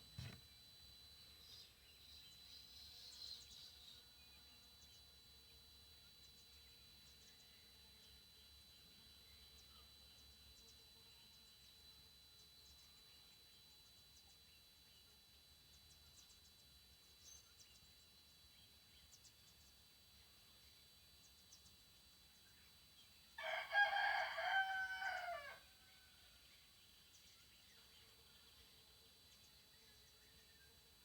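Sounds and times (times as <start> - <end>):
rooster crowing: 23.4 - 26.2.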